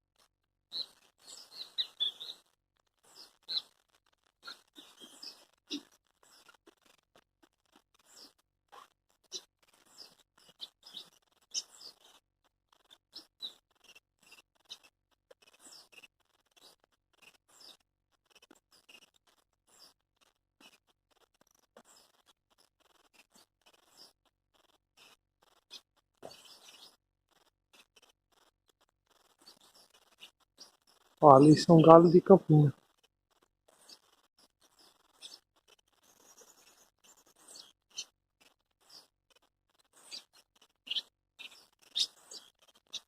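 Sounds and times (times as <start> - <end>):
songbirds chirping: 0.7 - 7.0, 7.7 - 12.2, 12.8 - 14.8, 15.4 - 16.0, 25.6 - 27.0, 29.2 - 32.7, 34.7 - 35.4, 36.0 - 38.1, 40.0 - 43.0.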